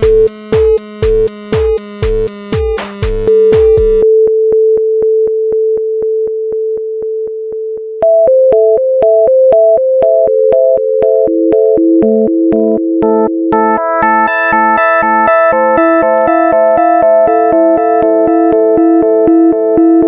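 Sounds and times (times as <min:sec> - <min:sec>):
synthesizer music: 0:00.0 - 0:04.0, 0:10.4 - 0:20.0
ticking beat: 0:00.0 - 0:04.0, 0:12.6 - 0:19.0.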